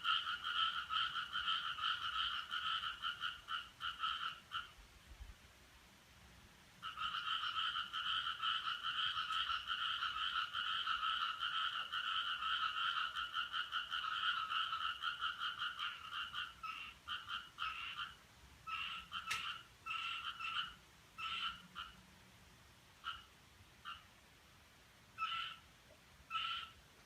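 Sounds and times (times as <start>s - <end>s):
pulsing croak-like trill: 0.0s - 4.7s, 6.8s - 22.0s, 26.3s - 26.7s.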